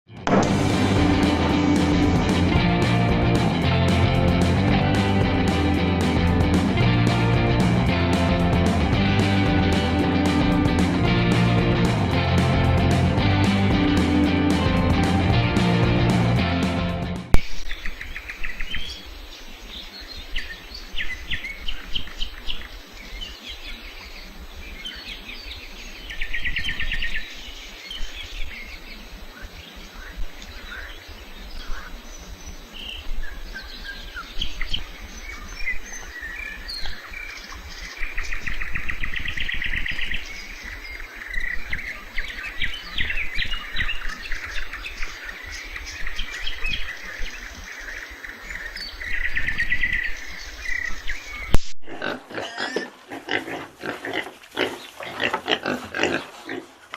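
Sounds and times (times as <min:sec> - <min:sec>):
songbirds singing and calling: 0:17.4 - 0:51.7, 0:52.3 - 0:56.2.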